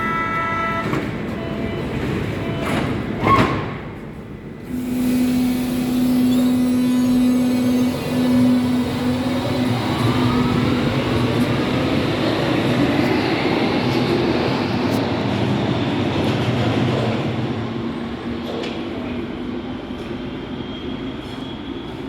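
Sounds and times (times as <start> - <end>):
train rumble: 0.0 - 22.0
train motors whining: 4.6 - 15.0.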